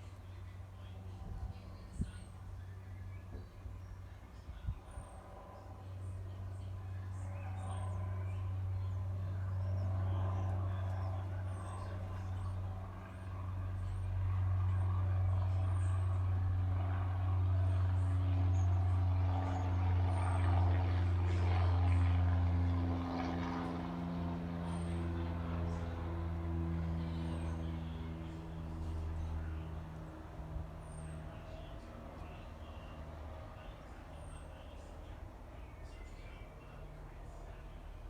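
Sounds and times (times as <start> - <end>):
vehicle engine running: 7.6 - 38.0.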